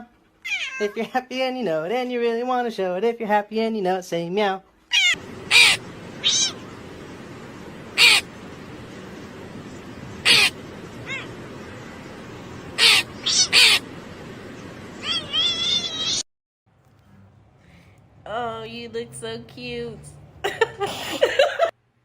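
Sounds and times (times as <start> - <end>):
cat meowing: 0.4 - 1.0, 4.9 - 6.6, 10.2 - 11.4, 12.8 - 13.8, 15.0 - 16.2.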